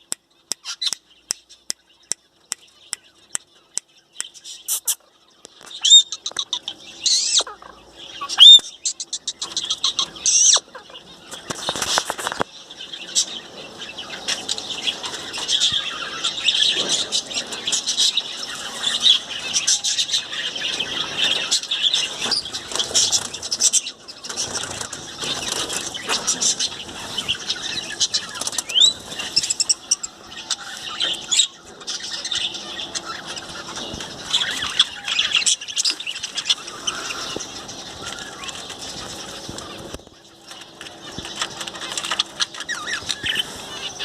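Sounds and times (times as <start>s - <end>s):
parrots chirping and squealing: 0.5s - 1.6s, 4.2s - 44.0s
parrots flapping wings: 11.4s - 12.5s, 40.6s - 43.4s.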